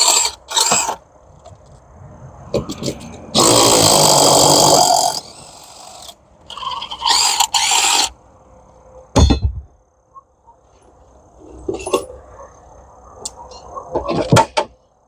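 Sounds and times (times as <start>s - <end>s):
sharp clunk: 9.1s - 9.7s.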